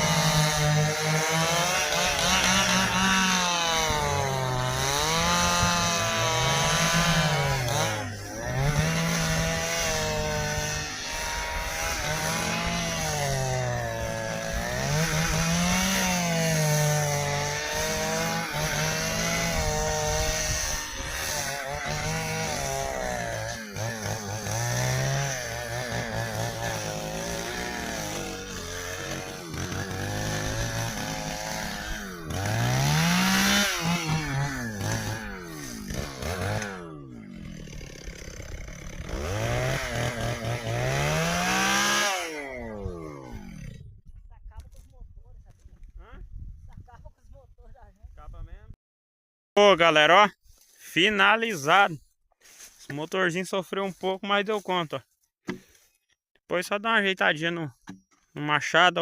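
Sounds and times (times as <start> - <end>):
chainsaw cutting hard wood: 0.0 - 44.1, 55.4 - 56.0.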